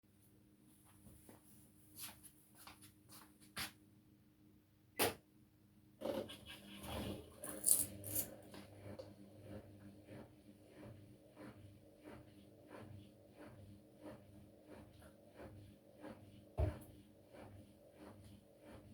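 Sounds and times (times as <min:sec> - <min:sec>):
washing machine soft knocks and clicks: 0:16.6 - 0:16.9.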